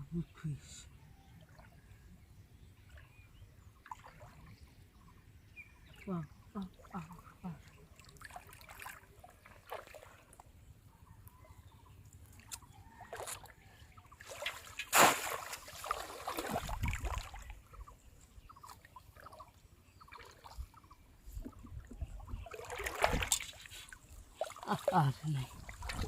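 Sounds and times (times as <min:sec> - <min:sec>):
splashing in shallow water: 0:03.8 - 0:04.6, 0:05.9 - 0:10.6, 0:12.2 - 0:26.0.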